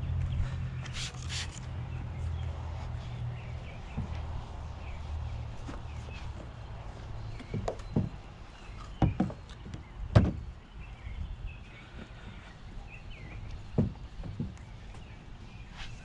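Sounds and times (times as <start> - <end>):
birds chirping faintly: 1.6 - 16.0
dull knocks and thumps: 3.8 - 4.4, 7.4 - 8.3, 8.9 - 10.5, 13.2 - 15.1.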